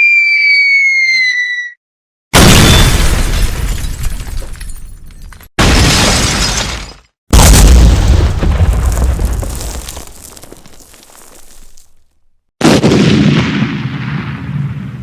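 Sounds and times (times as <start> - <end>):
sharp explosion: 7.3 - 9.9, 12.6 - 15.0
big explosion with deep rumble: 7.3 - 10.6, 12.6 - 15.0.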